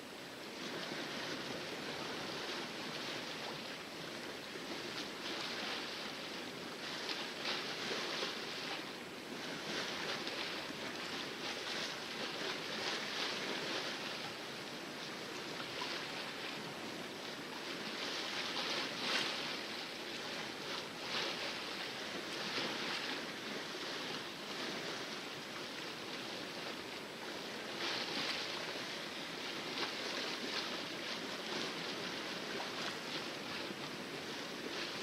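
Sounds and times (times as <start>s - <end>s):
water rushing along a hull: 0.0s - 35.0s.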